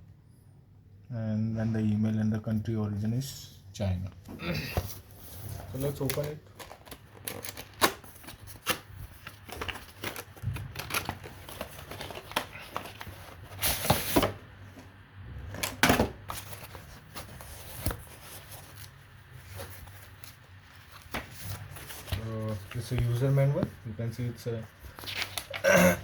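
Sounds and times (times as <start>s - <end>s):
packaging rustling and tearing: 4.8s - 14.8s, 15.5s - 23.6s, 24.5s - 25.8s
packaging clicks and knocks: 5.9s - 14.4s.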